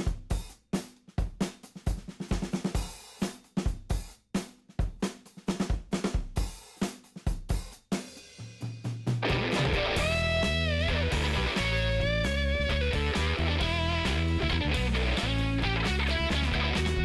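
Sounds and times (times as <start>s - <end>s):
drum-kit beat: 0.0s - 17.0s
bass and electric guitar: 9.2s - 17.0s.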